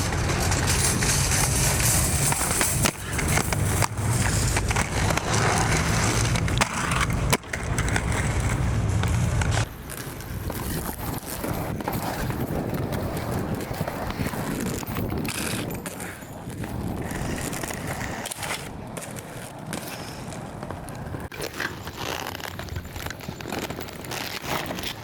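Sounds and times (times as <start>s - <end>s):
quiet street noise: 0.0s - 25.0s
wheels rumbling over pavement: 0.0s - 25.0s.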